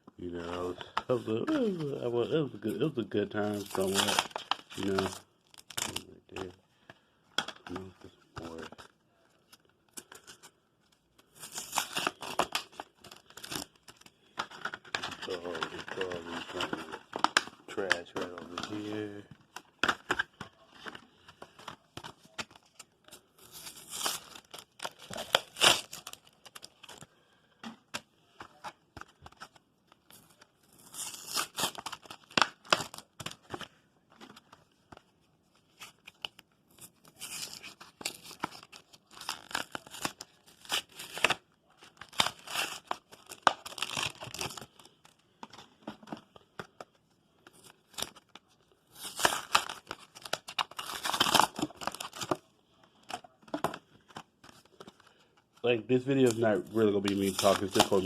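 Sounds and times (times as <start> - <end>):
foil wrappers tearing and crinkling: 0.6 - 6.5, 11.2 - 19.2, 21.6 - 27.0, 29.3 - 33.6, 35.8 - 45.2, 47.5 - 52.5, 55.9 - 58.0.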